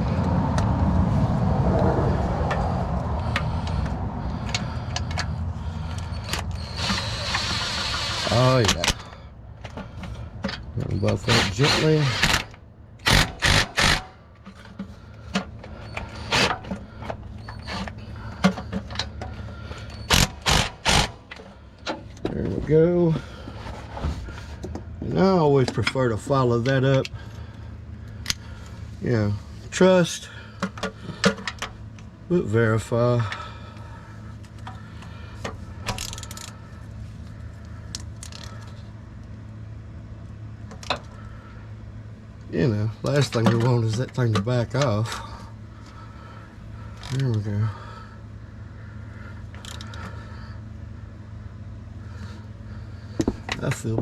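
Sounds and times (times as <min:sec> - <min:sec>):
steady low hum: 0:00.0 - 0:54.0
impact wrench bursts: 0:06.0 - 0:09.1, 0:11.1 - 0:14.2, 0:15.8 - 0:16.7, 0:19.9 - 0:21.3.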